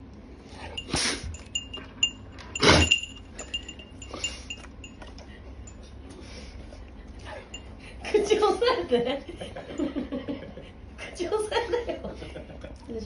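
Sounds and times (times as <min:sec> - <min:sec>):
light metallic pings: 0:00.8 - 0:05.1
dog sneezing: 0:02.6 - 0:02.9.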